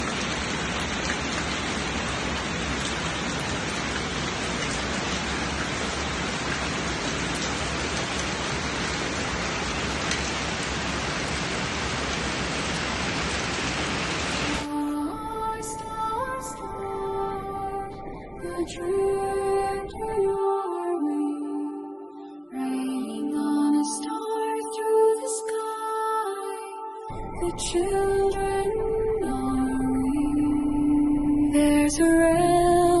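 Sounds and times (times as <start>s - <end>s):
rain drop ticks: 0.0s - 14.6s
heavy rain hissing: 0.0s - 20.1s.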